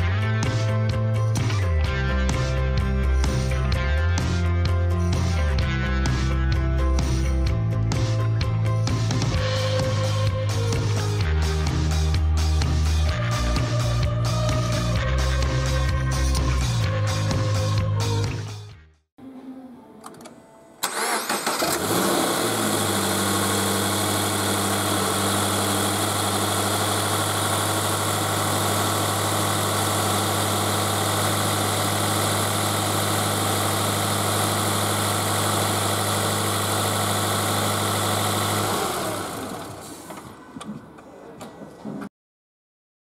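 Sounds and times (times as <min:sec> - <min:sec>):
car engine starting and idling: 0:20.1 - 0:40.4.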